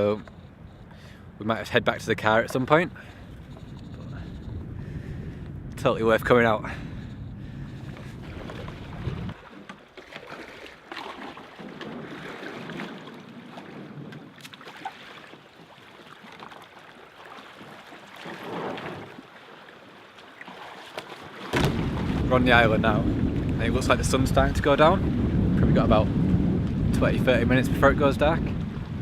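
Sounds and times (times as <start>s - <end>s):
wind buffeting microphone: 0.0s - 9.5s, 21.6s - 29.0s
water slapping against kayak: 6.8s - 29.0s
paddle strokes splashing: 7.4s - 22.4s.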